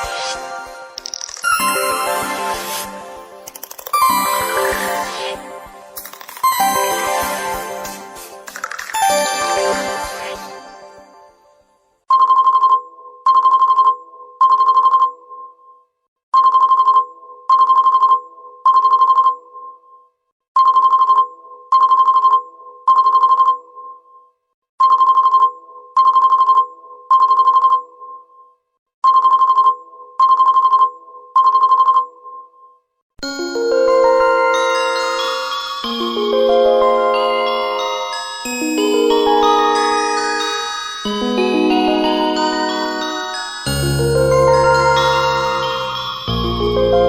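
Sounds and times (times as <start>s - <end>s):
trilled phone ringtone: 16.4s - 19.8s, 20.6s - 24.1s, 24.8s - 28.3s, 29.0s - 32.5s, 33.3s - 47.0s.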